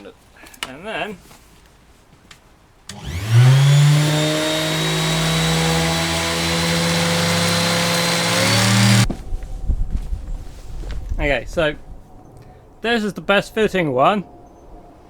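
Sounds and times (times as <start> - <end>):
power tool motor whining: 2.9 - 9.1.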